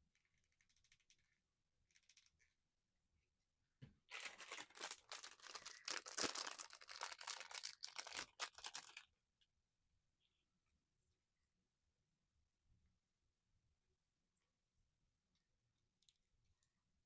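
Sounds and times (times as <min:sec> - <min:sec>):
plastic packaging crinkling and tearing: 0:04.1 - 0:09.1.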